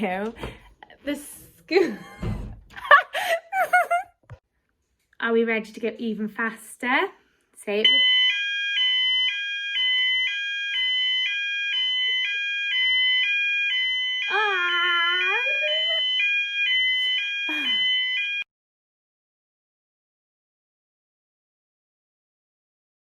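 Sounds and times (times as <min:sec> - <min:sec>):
two-tone fire alarm: 0:07.8 - 0:18.5
person crying out: 0:14.3 - 0:16.0.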